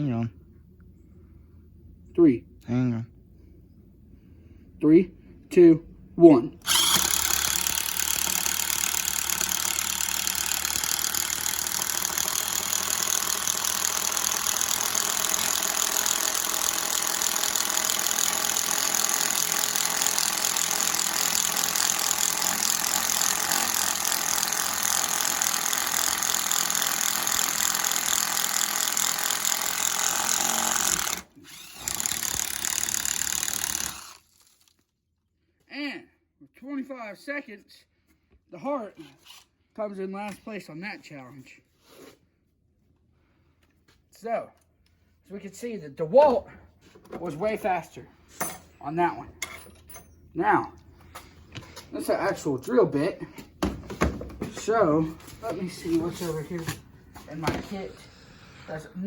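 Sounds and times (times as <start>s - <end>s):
cordless drill boring into wood: 6.6s - 34.6s.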